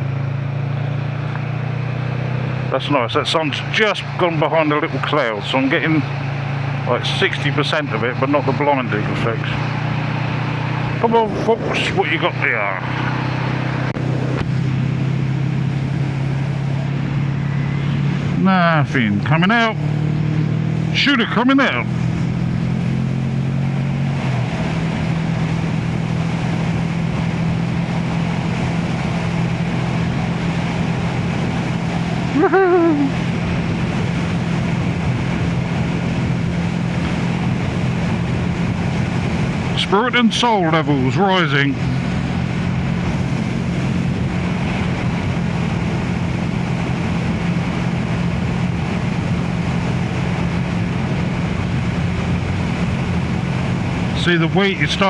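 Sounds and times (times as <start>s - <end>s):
motorcycle engine cruising: 0.0s - 55.0s
wind and road noise: 0.0s - 55.0s
wind on microphone: 41.8s - 54.2s.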